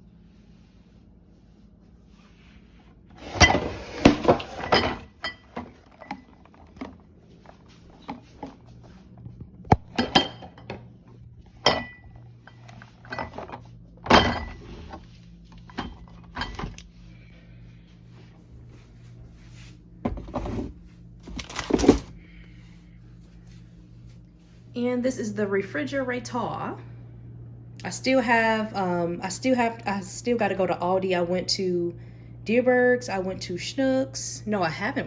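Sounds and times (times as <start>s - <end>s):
bottles and containers clinking: 3.2s - 8.8s, 9.7s - 10.9s, 11.5s - 16.8s.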